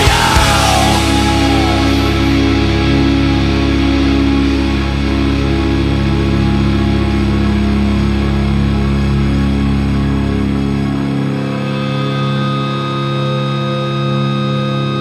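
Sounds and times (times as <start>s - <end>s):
rock song with electric guitars: 0.0s - 7.2s.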